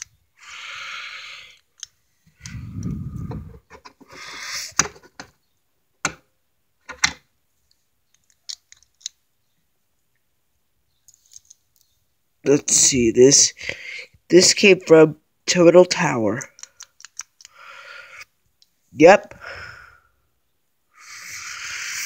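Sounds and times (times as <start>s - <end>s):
sharp clicks: 16.4s - 17.6s.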